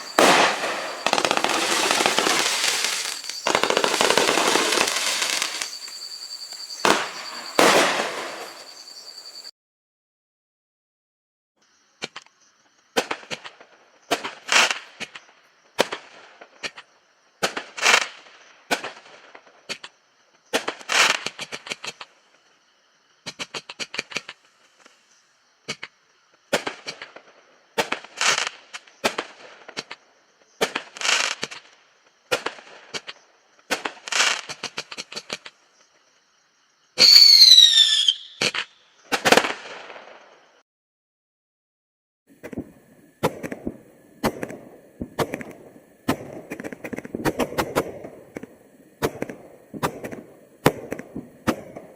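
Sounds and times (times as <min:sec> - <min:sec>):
firework bang: 0:00.0 - 0:09.5
firework whistle falling in pitch: 0:00.0 - 0:09.5, 0:37.0 - 0:38.5
fireworks popping and crackling: 0:00.0 - 0:09.5, 0:30.6 - 0:31.7, 0:32.3 - 0:35.5, 0:37.0 - 0:40.1, 0:42.4 - 0:51.9.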